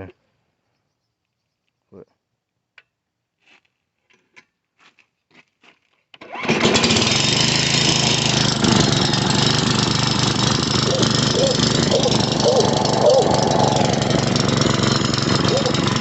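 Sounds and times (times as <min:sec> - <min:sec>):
small engine pull-started and running: 0:06.2 - 0:16.0.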